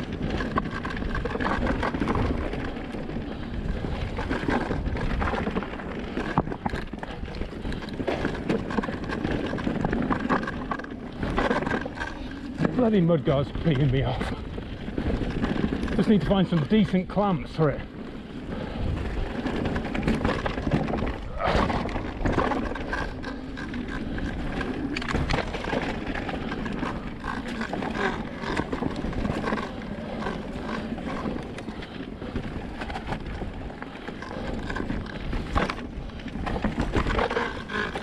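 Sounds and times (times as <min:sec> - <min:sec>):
mudguard rattling: 0:00.0 - 0:17.8
tyres on dirt and stones: 0:00.0 - 0:38.0.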